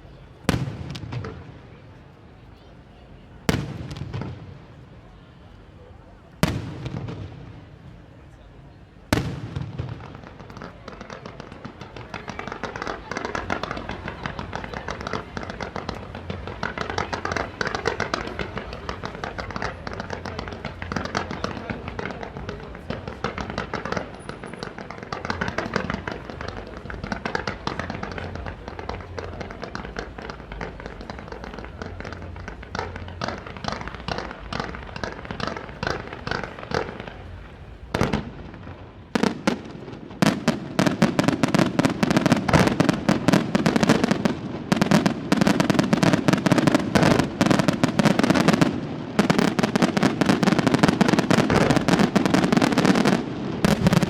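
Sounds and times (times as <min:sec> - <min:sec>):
fireworks crackling and banging: 0:00.0 - 0:54.0.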